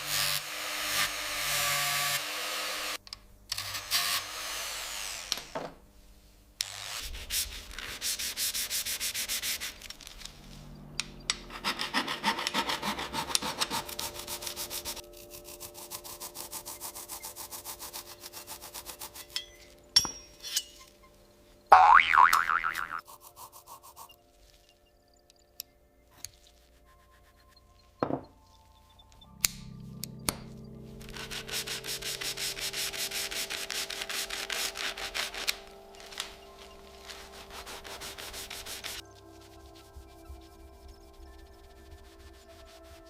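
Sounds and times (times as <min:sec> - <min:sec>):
rubbing strokes on metal: 0:11.5 - 0:19.8, 0:31.0 - 0:43.0.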